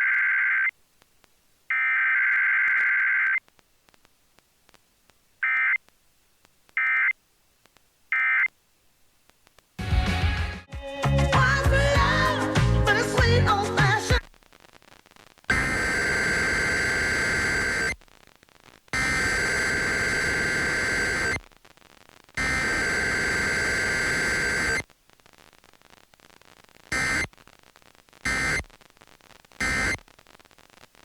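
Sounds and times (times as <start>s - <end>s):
buzzing digital data bursts: 15.5s - 18.0s, 18.9s - 21.4s, 22.4s - 24.8s, 26.9s - 27.3s, 28.2s - 28.7s, 29.6s - 30.0s.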